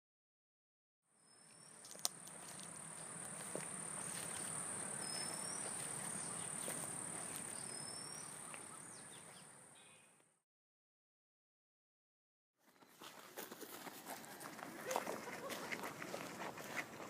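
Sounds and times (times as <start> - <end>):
insects droning: 1.2 - 10.0
bird chirps: 1.2 - 10.3.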